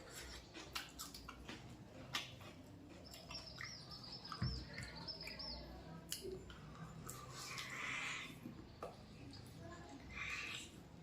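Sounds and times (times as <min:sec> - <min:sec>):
chewing smacks: 0:00.0 - 0:05.4, 0:06.0 - 0:09.5
small bird chirping: 0:02.9 - 0:05.9.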